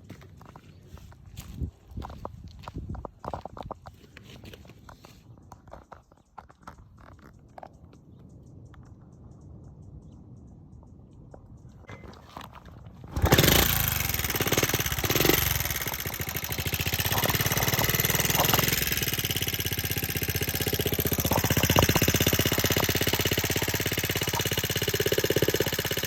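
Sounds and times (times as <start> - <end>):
small motorcycle engine idling: 13.0 - 26.0.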